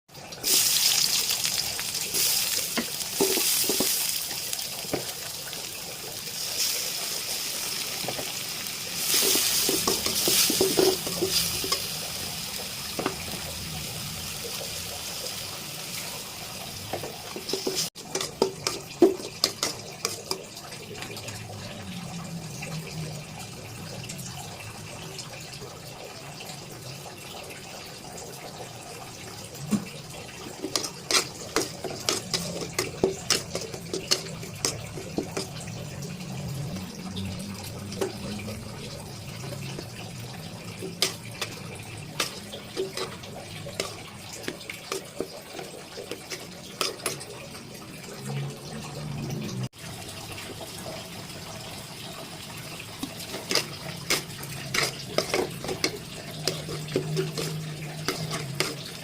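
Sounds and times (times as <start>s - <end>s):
watery hiss of cooking: 0.2s - 59.0s.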